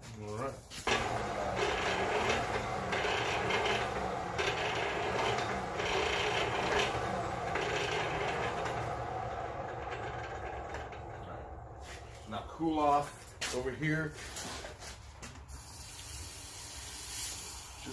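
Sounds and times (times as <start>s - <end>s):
steady low hum: 0.8s - 13.8s
metal rasping and scraping: 0.8s - 15.1s.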